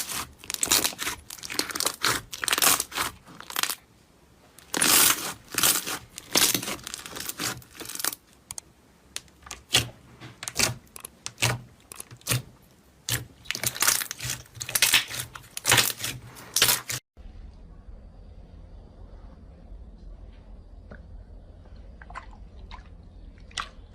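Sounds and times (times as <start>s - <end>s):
slime crackling and popping: 0.0s - 3.8s, 4.6s - 8.2s, 9.2s - 17.0s
low hum: 17.2s - 23.9s.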